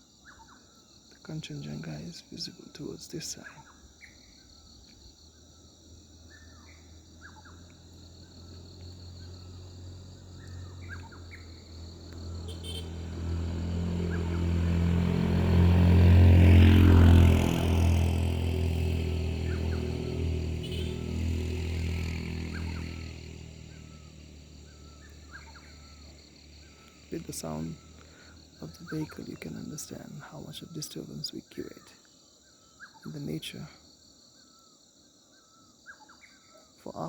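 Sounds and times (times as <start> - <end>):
birds chirping: 0.0 - 37.0
insects buzzing: 0.0 - 37.0
vehicle engine passing by: 6.1 - 30.1.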